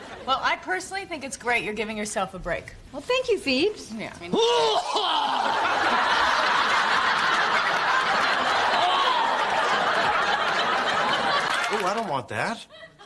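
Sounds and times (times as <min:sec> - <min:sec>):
studio audience laughing: 0:05.3 - 0:13.0.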